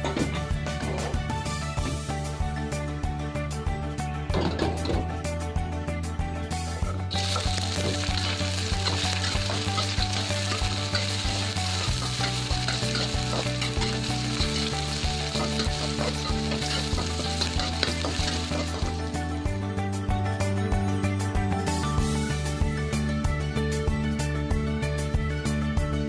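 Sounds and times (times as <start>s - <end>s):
background music: 0.0s - 26.0s
food sizzling in hot oil: 7.1s - 19.6s.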